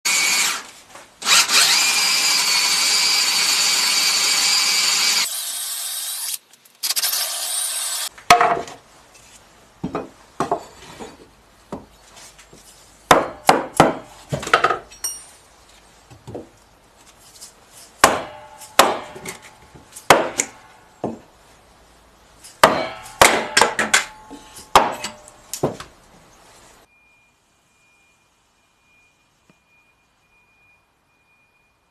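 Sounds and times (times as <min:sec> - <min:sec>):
power tool running: 0:01.2 - 0:08.1
tools knocking and scraping wood: 0:08.1 - 0:15.4, 0:16.0 - 0:21.4, 0:22.4 - 0:26.0.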